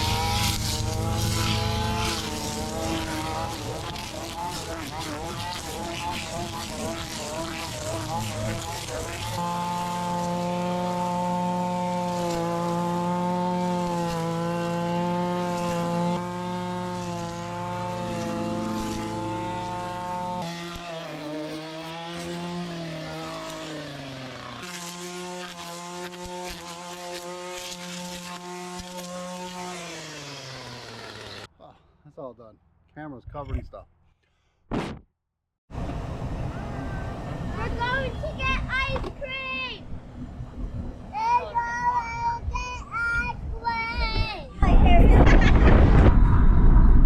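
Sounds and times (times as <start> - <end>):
string trimmer engine running: 0.0 - 31.5.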